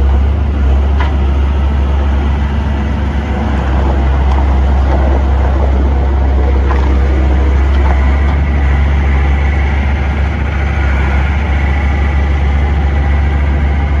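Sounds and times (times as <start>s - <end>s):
loader diesel engine running: 0.0s - 14.0s.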